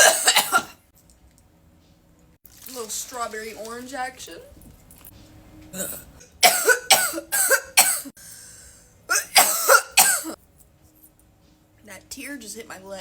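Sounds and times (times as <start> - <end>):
person coughing hard: 0.0 - 0.8, 5.8 - 8.2, 9.1 - 10.4.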